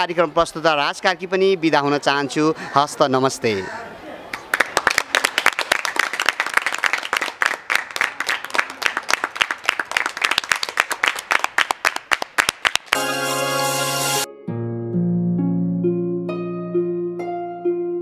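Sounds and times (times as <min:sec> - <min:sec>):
people clapping: 0:04.3 - 0:13.3.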